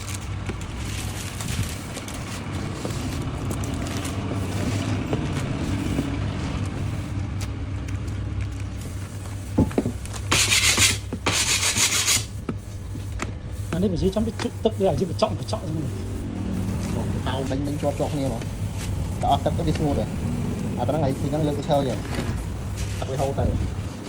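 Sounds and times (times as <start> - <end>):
rubbing and scraping: 0.0 - 7.5, 8.5 - 24.0
low hum: 0.0 - 10.4, 12.2 - 24.0
harsh hissing bursts: 8.8 - 23.9.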